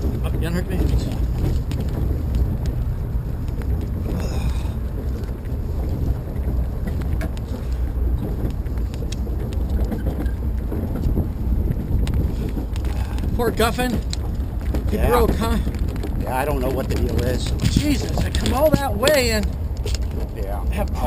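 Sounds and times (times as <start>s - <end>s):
boat engine rumbling: 0.0s - 21.0s
wind buffeting microphone: 0.0s - 21.0s.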